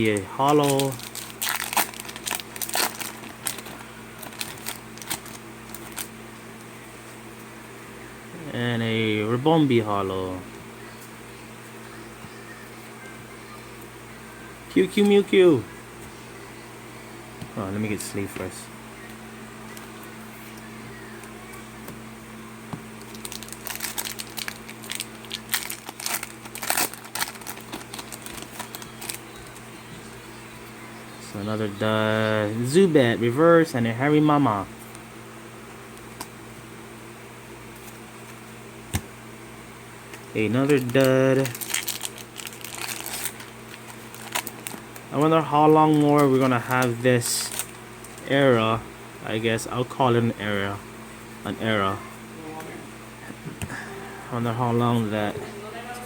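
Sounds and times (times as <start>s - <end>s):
plastic sleeve crinkling: 0.0s - 6.1s, 23.0s - 29.7s, 40.5s - 48.2s
steady low hum: 0.0s - 56.0s.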